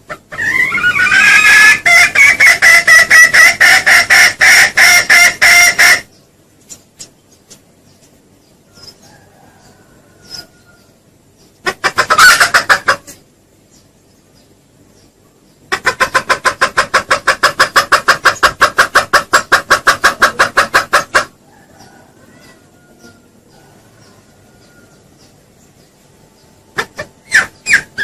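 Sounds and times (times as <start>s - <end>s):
junglefowl clucking: 0.0s - 7.6s, 8.7s - 13.3s, 15.6s - 25.3s, 26.7s - 28.0s
junglefowl call: 0.1s - 6.1s, 11.7s - 13.2s, 26.8s - 28.0s.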